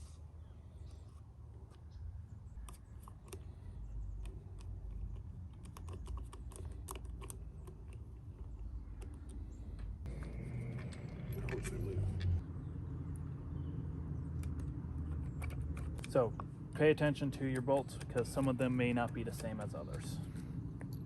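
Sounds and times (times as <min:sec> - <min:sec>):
low steady rumble: 0:06.5 - 0:21.0.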